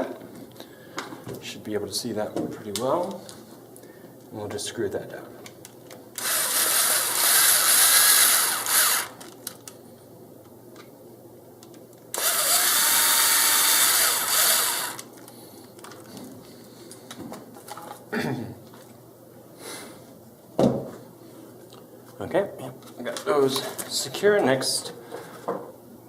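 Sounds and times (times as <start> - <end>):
power screwdriver driving screws: 6.2 - 9.3, 12.2 - 15.1.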